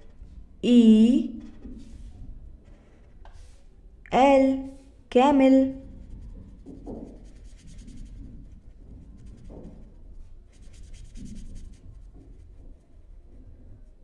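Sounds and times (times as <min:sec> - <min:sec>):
pen scratching on surface: 0:02.7 - 0:03.6, 0:05.7 - 0:13.4.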